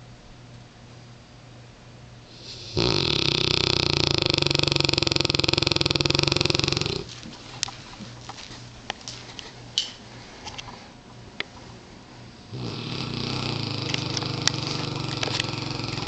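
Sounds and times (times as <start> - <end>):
dog snoring: 2.3 - 7.2, 12.4 - 16.0.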